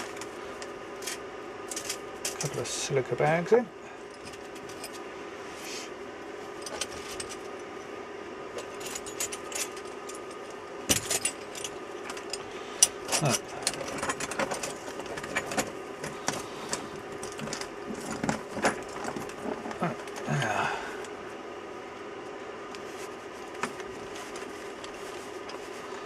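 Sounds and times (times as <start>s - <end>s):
faint steady hum: 0.0s - 26.0s
metal tools clinking: 8.6s - 20.2s.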